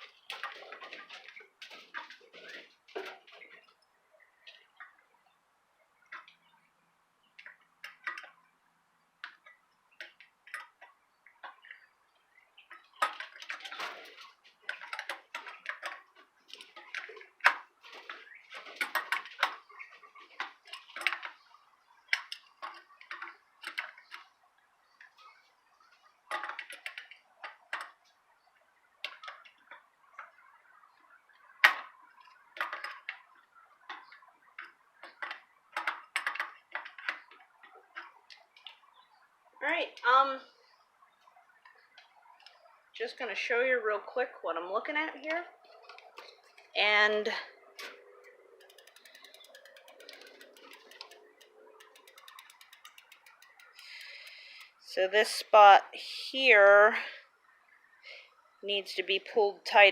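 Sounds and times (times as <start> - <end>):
light clicks and ticks: 45.2 - 55.8
short metallic rattles: 47.6 - 55.0.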